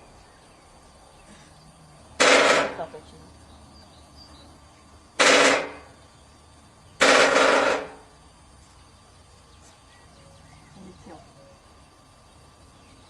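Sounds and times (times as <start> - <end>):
woodpecker drumming: 7.0 - 8.0.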